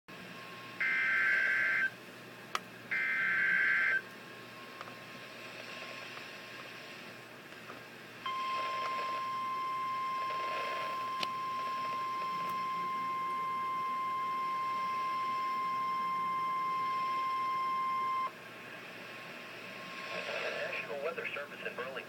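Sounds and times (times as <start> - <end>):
faint radio hiss: 0.1 - 22.0
steady alarm beep: 0.8 - 1.9, 2.9 - 4.0, 8.3 - 18.3.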